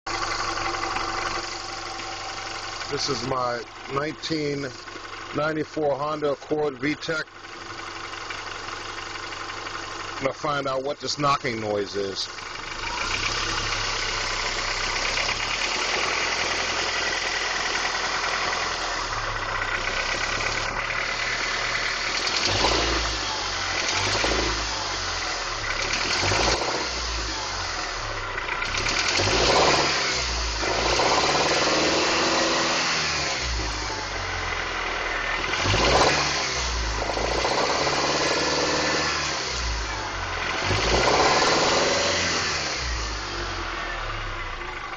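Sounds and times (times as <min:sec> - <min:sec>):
car engine idling and revving: 0:00.0 - 0:44.9
engine knocking: 0:00.1 - 0:30.0.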